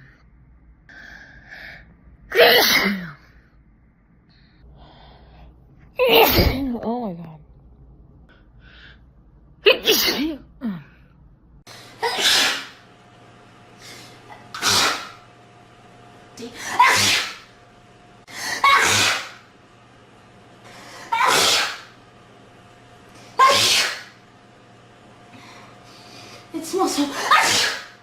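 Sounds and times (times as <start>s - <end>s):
hard sneezes: 2.3s - 3.2s, 9.7s - 10.4s, 12.0s - 12.8s, 14.5s - 15.2s, 16.6s - 17.5s, 18.4s - 19.5s, 21.0s - 22.0s, 23.4s - 24.2s, 27.1s - 28.0s.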